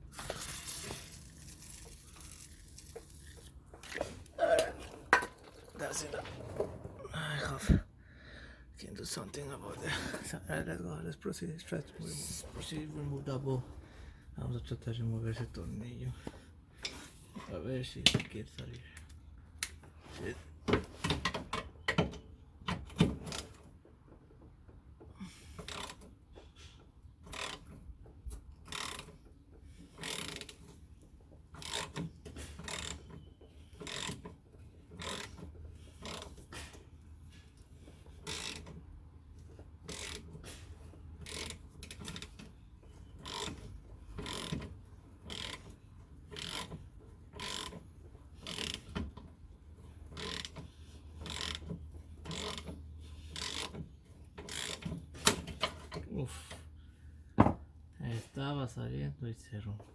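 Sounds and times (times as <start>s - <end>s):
ratchet wrench clicking: 25.6s - 26.0s, 27.3s - 27.7s, 28.7s - 29.2s, 30.0s - 30.5s, 33.8s - 34.2s, 38.2s - 38.6s, 41.2s - 42.3s, 43.2s - 43.6s, 44.2s - 44.6s, 45.3s - 45.7s, 46.3s - 46.7s, 47.4s - 47.8s, 48.4s - 48.8s, 50.2s - 50.6s, 51.2s - 51.7s, 52.3s - 52.7s, 53.3s - 53.7s, 54.4s - 54.8s.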